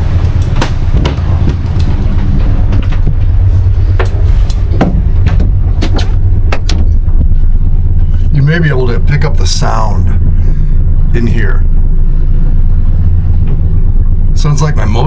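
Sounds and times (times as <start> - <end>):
propeller shaft rumbling: 0.0 - 15.0
sharp knocks: 0.4 - 3.2, 3.9 - 7.3.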